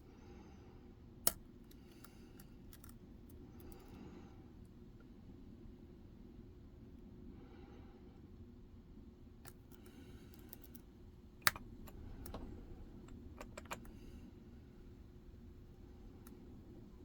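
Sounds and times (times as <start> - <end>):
lock pick clicking: 1.3 - 3.0, 11.4 - 14.3.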